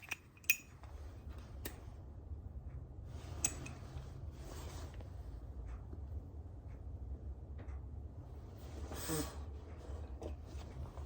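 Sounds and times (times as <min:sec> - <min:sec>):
steady low hum: 0:00.0 - 0:11.0
soft rustles: 0:03.1 - 0:05.5.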